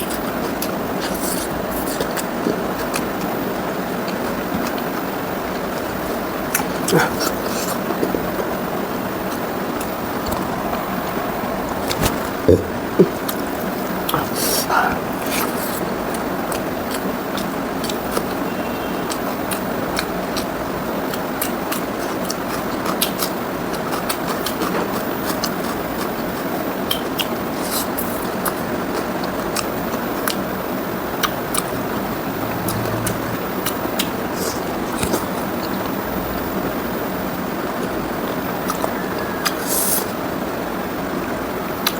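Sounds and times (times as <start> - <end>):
close chewing sounds: 0.0 - 35.9, 38.5 - 40.2.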